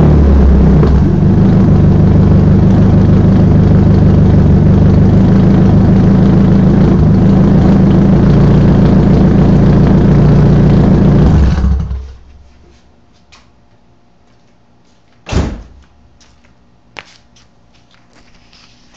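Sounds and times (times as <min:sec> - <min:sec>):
loud car engine running: 0:00.0 - 0:12.4
loud thump: 0:15.3 - 0:15.8.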